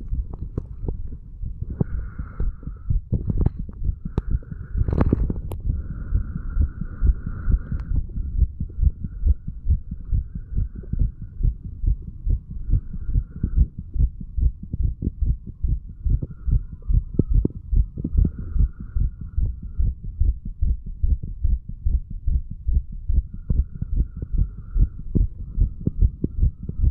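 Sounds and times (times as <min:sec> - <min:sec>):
heartbeat thumping: 0:00.0 - 0:26.9.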